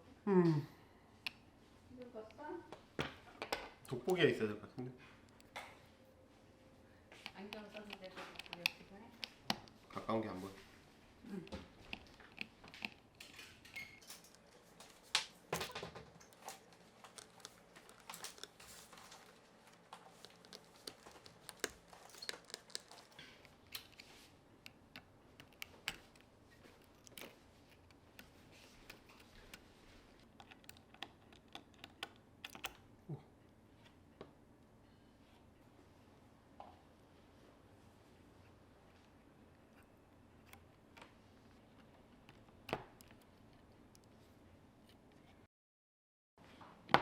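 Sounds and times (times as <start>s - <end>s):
hand tools clicking and tapping: 2.2s - 5.8s, 7.1s - 10.6s, 11.3s - 32.9s.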